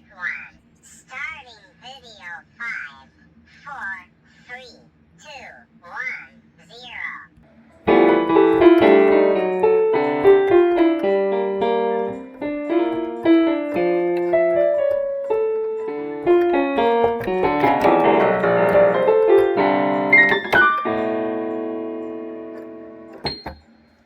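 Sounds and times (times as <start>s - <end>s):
solo piano melody: 7.8s - 23.7s.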